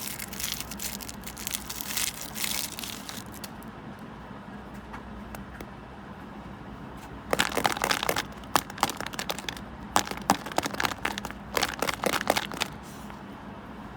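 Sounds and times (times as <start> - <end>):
crinkling and crackling clicks: 0.0 - 3.7, 7.3 - 13.0.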